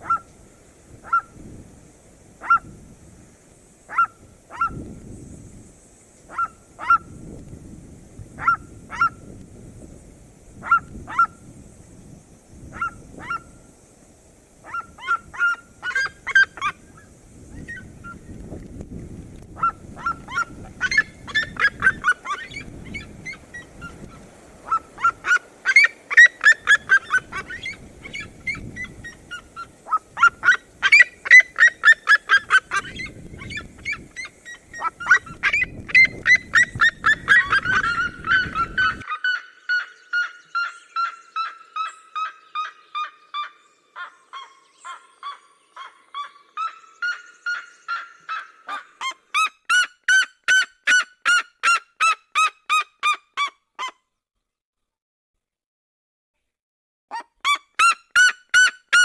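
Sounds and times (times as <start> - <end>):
birds yelping calls: 19.6 - 51.8.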